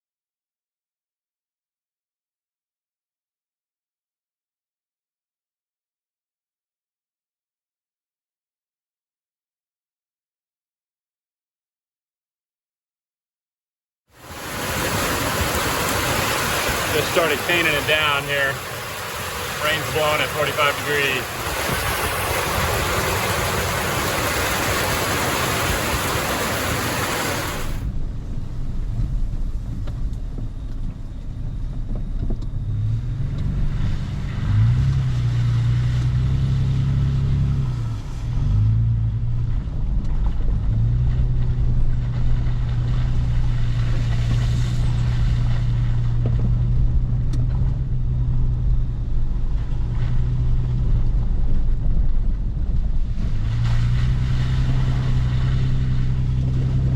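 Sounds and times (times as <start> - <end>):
heavy rain hissing: 14.2 - 27.8
low steady hum and rumble: 27.1 - 56.9.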